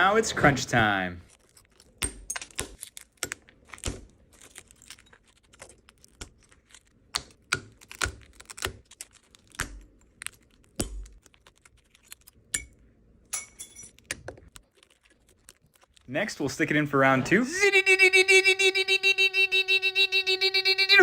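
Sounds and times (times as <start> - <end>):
glass cracking off: 1.2 - 12.7.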